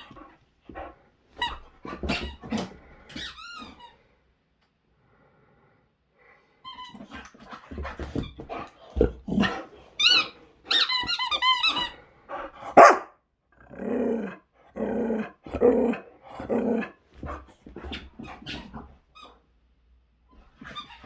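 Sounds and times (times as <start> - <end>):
dog growling: 8.9 - 9.7, 12.4 - 17.0
squeaky toy squeaking: 10.0 - 12.0.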